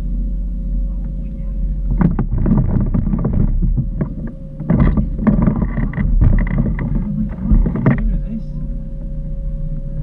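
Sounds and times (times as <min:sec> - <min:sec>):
boat engine rumble: 0:00.0 - 0:10.0
knocks and clatter: 0:01.9 - 0:08.2.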